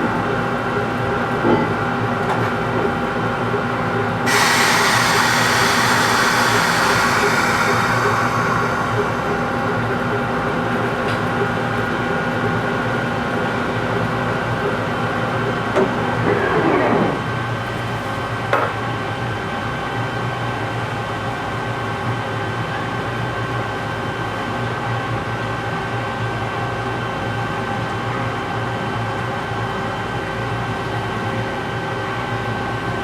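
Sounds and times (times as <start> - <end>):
metal lathe humming: 4.3 - 10.9.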